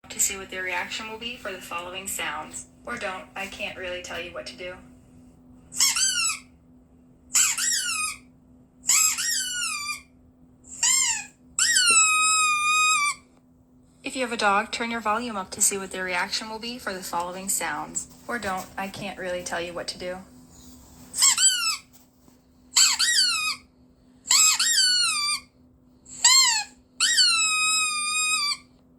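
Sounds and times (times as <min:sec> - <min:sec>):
squeaky dog toy squeaking: 0:05.7 - 0:06.5, 0:07.3 - 0:10.1, 0:10.7 - 0:13.3, 0:21.1 - 0:21.9, 0:22.8 - 0:23.7, 0:24.3 - 0:25.5, 0:26.1 - 0:28.7.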